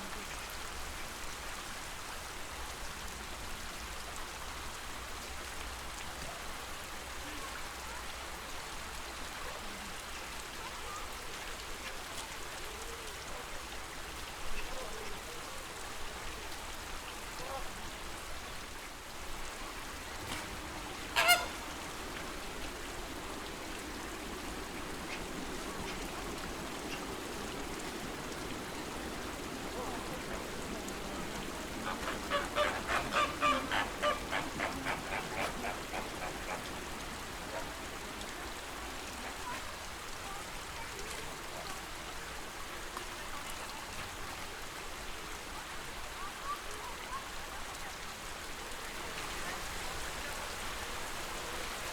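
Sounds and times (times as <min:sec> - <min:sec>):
lake water washing: 0:00.0 - 0:51.9
flamingos honking: 0:20.0 - 0:39.6.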